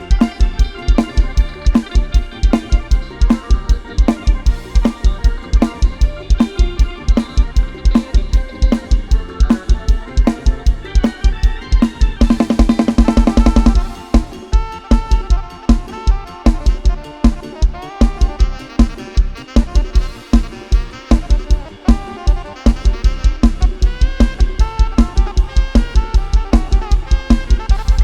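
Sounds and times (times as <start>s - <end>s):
melody line: 0.0s - 28.0s
programmed drum beat: 0.0s - 28.0s.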